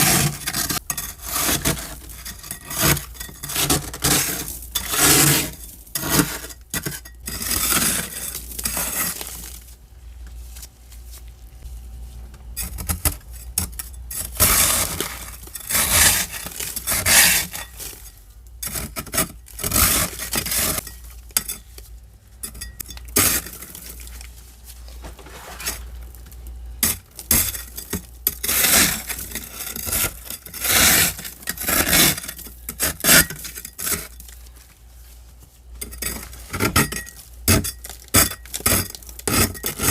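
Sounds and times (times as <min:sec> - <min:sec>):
ice being scraped: 0:00.0 - 0:09.6, 0:14.1 - 0:20.9, 0:23.2 - 0:24.1, 0:25.0 - 0:26.0, 0:26.8 - 0:34.3, 0:35.8 - 0:39.9.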